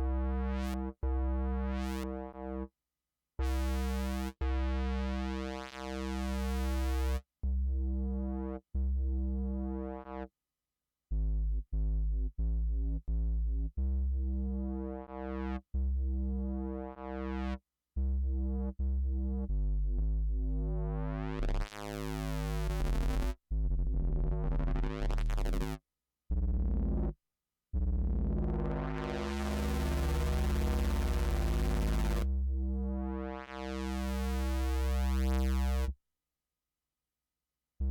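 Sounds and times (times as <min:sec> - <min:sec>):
deep synth bass: 0:07.4 - 0:09.9, 0:11.1 - 0:27.2, 0:27.8 - 0:35.9.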